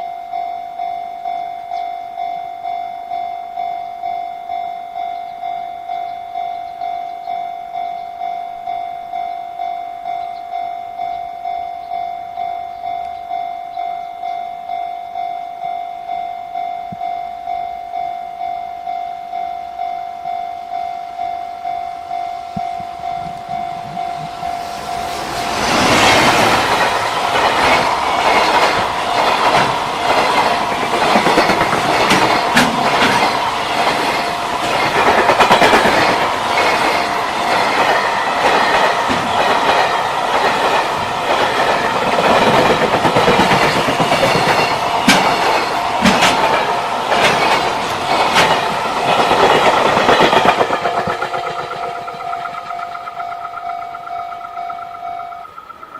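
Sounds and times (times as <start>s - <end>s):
freight train passing: 0.0s - 55.9s
level-crossing alarm pulsing: 14.0s - 55.9s
train wheels clacking on rail joints: 22.6s - 55.9s.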